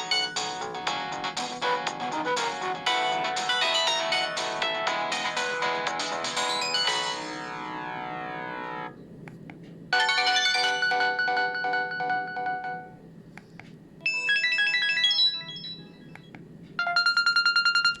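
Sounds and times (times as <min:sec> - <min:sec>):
phone ringtone melodies: 0:00.0 - 0:08.9, 0:10.0 - 0:13.0, 0:14.0 - 0:16.2, 0:16.8 - 0:18.0
pulsing beep tune: 0:14.1 - 0:18.0.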